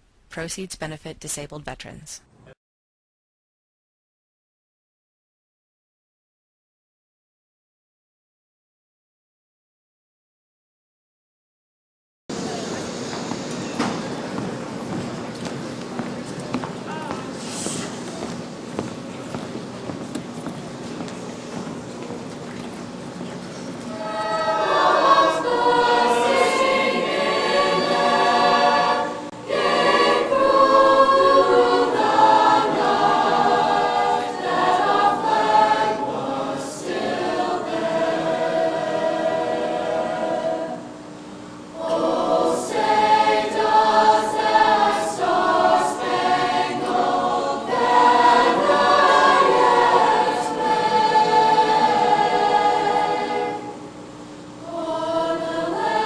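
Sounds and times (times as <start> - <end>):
choir singing: 23.9 - 41.0, 41.8 - 53.9, 54.6 - 56.0.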